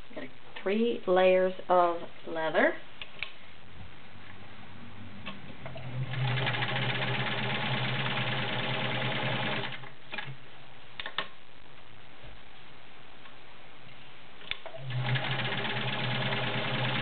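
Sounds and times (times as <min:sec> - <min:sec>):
sewing machine stitching: 0:05.7 - 0:10.3, 0:14.7 - 0:17.0.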